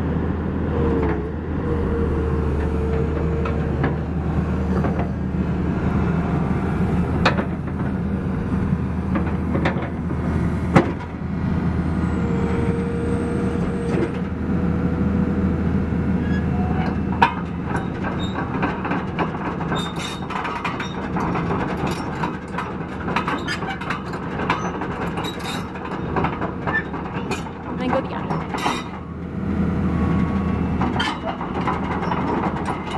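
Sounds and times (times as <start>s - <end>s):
excavator diesel engine running: 0.0s - 32.9s.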